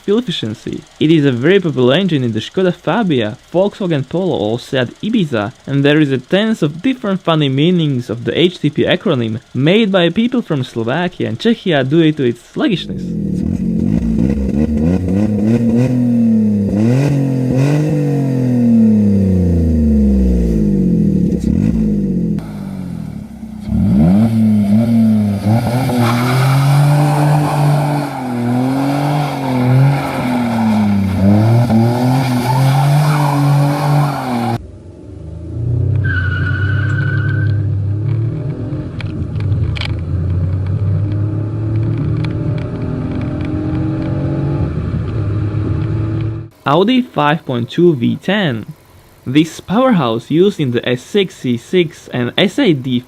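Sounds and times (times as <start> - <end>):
petrol engine revving: 0.0 - 53.0.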